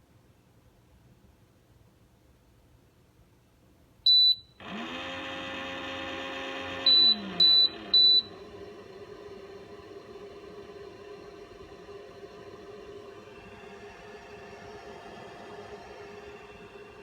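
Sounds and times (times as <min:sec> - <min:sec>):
machine beeps: 0:04.1 - 0:04.5, 0:06.8 - 0:08.4
quiet machine hum: 0:04.1 - 0:17.0
small motor whirring: 0:04.6 - 0:17.0.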